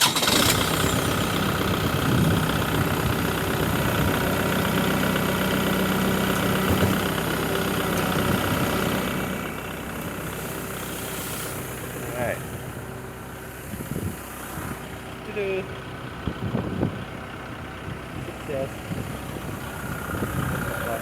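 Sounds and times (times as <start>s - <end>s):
tractor engine running: 0.0s - 21.0s.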